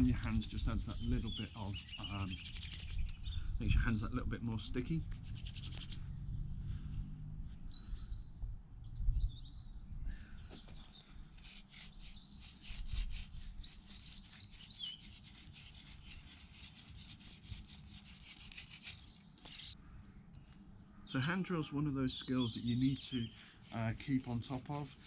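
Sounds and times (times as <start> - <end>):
wood rubbing on wood: 0.0 - 3.2, 5.2 - 6.0, 14.0 - 19.8, 22.9 - 25.0
small birds chirping: 0.0 - 25.0.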